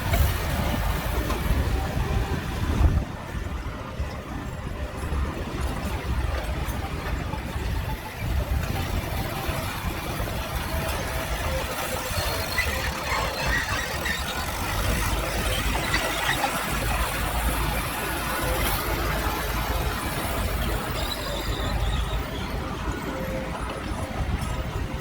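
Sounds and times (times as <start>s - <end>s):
diesel engine running: 0.0s - 25.0s
high metallic squeals: 8.7s - 17.5s, 20.2s - 23.5s.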